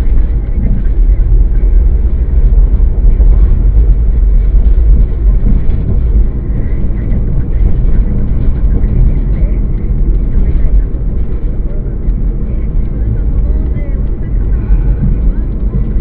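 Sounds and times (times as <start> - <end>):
car road and engine noise: 0.0 - 16.0.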